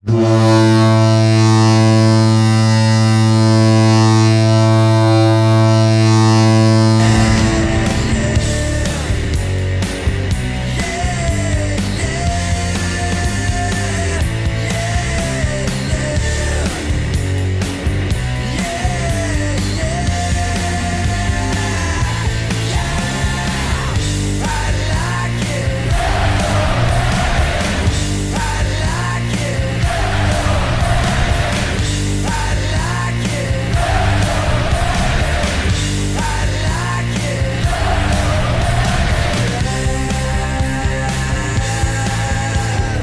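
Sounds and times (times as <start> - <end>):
loud rock music: 0.0 - 43.0
low steady goal horn blast: 0.1 - 9.6.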